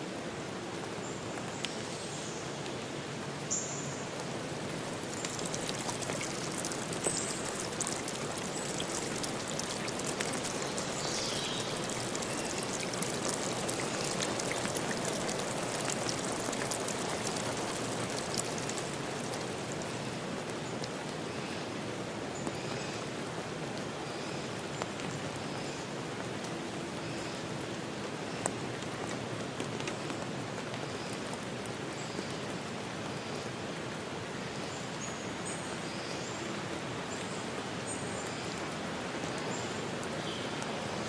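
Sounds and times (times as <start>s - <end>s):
water rushing: 4.1s - 20.8s
drip-like ticks: 4.8s - 20.0s.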